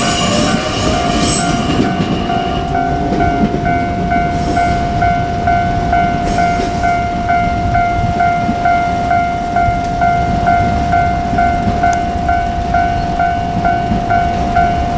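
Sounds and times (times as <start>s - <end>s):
electric train rumbling past: 0.0s - 14.9s
level-crossing warning bell: 0.0s - 14.9s.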